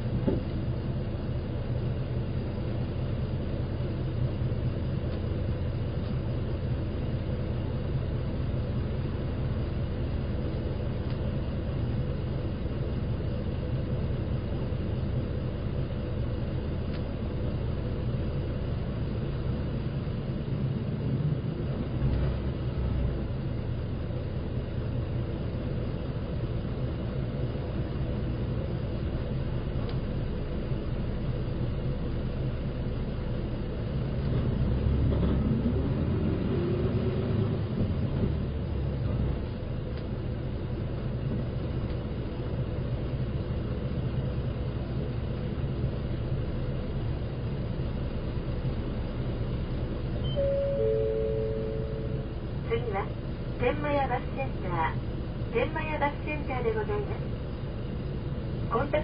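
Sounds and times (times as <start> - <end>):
bus engine rumble: 0.0 - 59.0
road noise: 16.5 - 59.0.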